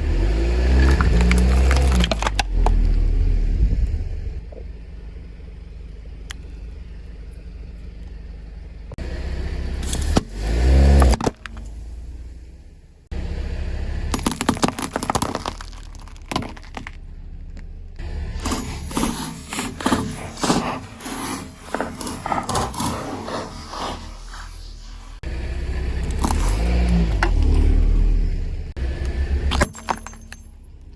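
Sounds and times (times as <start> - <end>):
car engine: 0.0 - 30.9
tyres rolling: 0.1 - 3.1, 14.1 - 25.3
brittle objects crunching and cracking: 0.7 - 2.8, 14.2 - 17.0.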